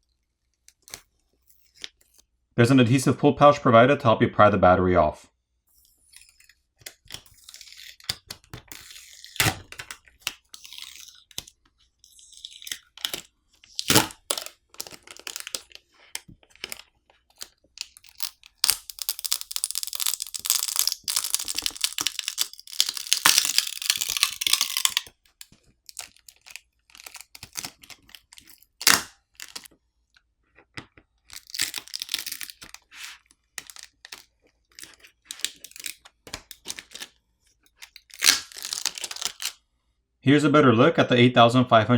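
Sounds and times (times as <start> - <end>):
adhesive crackling and tearing: 6.1 - 29.7, 31.3 - 39.6.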